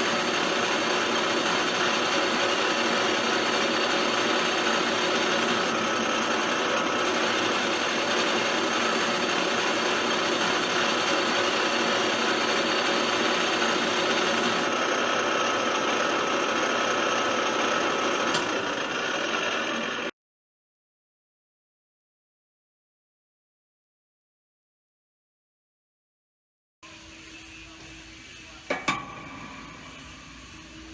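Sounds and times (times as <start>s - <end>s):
pipe-drilling machine running: 0.0s - 20.1s, 26.8s - 30.9s.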